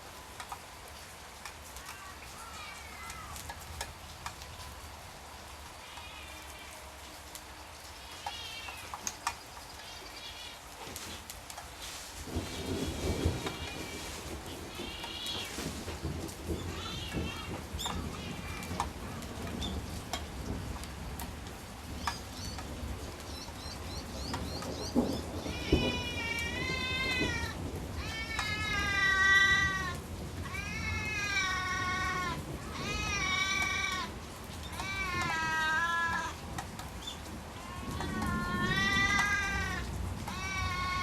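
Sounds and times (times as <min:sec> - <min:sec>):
cat meowing: 0:16.7 - 0:18.8, 0:25.5 - 0:36.4, 0:37.6 - 0:41.0.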